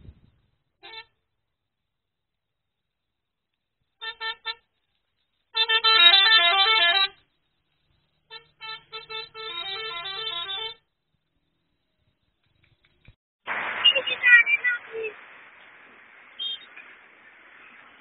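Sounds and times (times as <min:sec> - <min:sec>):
musical bus horn tune: 0:00.8 - 0:01.2, 0:04.0 - 0:04.7, 0:05.5 - 0:07.3, 0:08.2 - 0:10.9.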